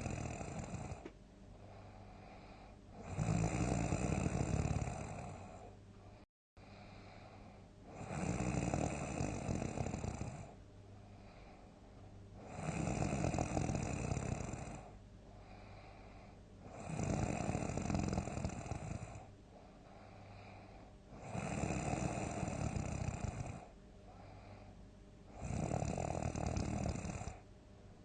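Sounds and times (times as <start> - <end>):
person snoring loudly: 0.0 - 1.1, 1.7 - 5.7, 7.9 - 10.6, 12.4 - 15.9, 16.6 - 19.3, 21.1 - 23.7, 25.3 - 27.4
quiet breathing: 0.0 - 28.0.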